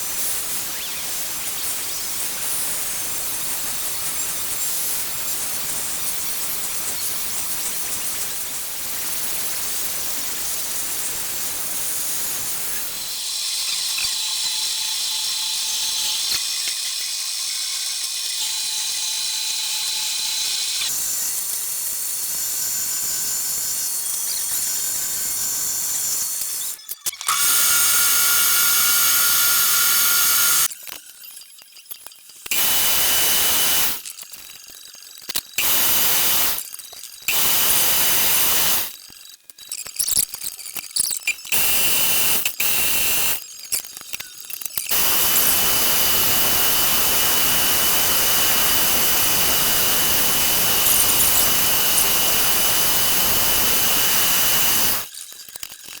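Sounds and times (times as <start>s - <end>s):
power tool whining: 27.1s - 30.7s, 32.5s - 34.0s, 35.6s - 36.6s, 37.3s - 38.9s, 44.9s - 55.1s.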